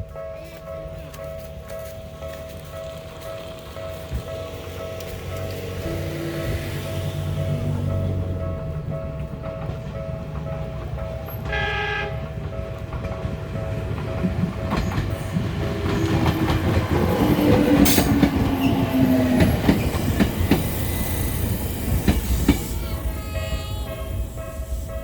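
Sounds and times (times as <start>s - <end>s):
train wheels clacking over rail joints: 0.4s - 25.0s
low train motor hum: 1.9s - 25.0s
train horn blast: 11.3s - 12.5s.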